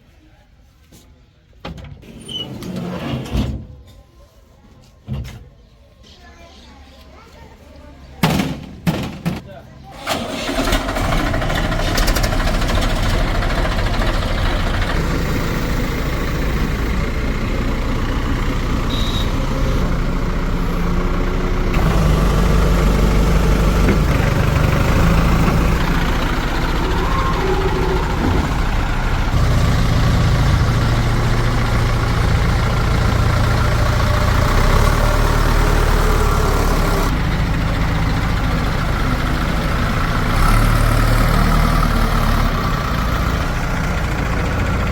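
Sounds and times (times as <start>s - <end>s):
heavy diesel engine running: 9.9s - 44.9s.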